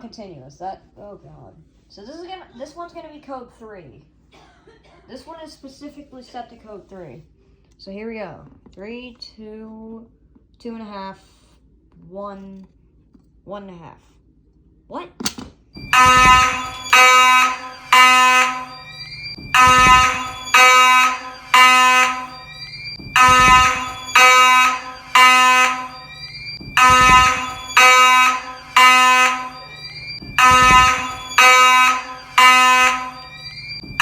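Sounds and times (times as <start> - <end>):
fire alarm horn blasts: 15.8 - 34.0.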